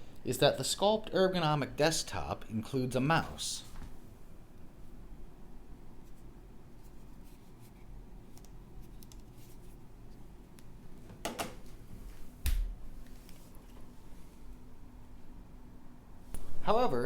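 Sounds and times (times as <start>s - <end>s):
keyboard and mouse clicks: 8.3s - 9.3s.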